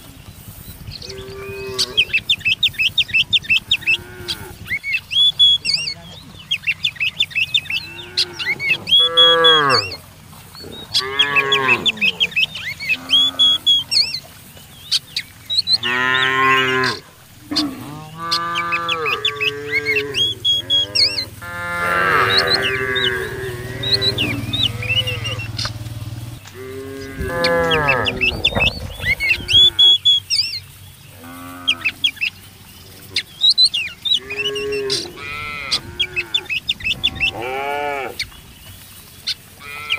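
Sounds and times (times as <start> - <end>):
birds chirping: 0.0 - 39.9
cattle mooing: 1.0 - 2.3, 3.7 - 4.6, 7.6 - 14.2, 15.8 - 30.0, 31.2 - 32.1, 34.1 - 38.2, 39.6 - 39.9.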